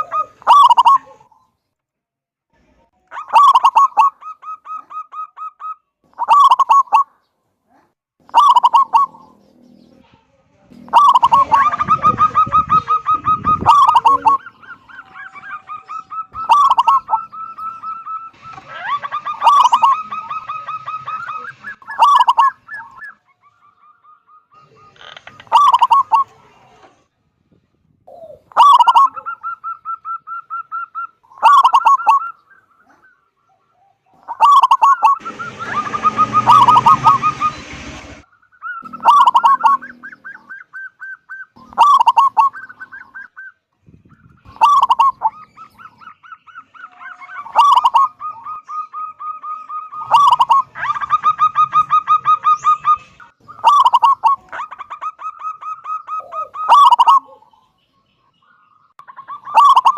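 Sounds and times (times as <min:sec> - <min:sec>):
dove cooing: 0:00.0 - 0:01.4, 0:03.1 - 0:07.2, 0:08.3 - 0:26.9, 0:28.1 - 0:43.6, 0:44.3 - 0:57.7, 0:59.0 - 0:59.9
rushing noise: 0:35.2 - 0:38.3.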